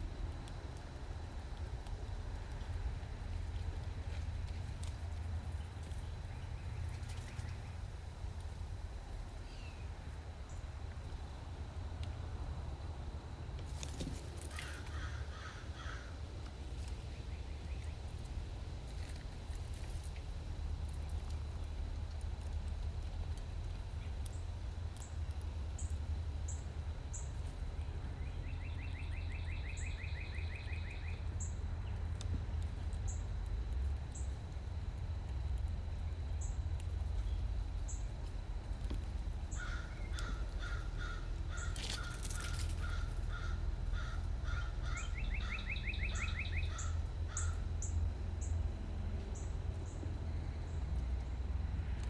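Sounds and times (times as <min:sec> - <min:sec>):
steady low rumble: 0:00.0 - 0:52.0
bird trilling: 0:39.5 - 0:47.9.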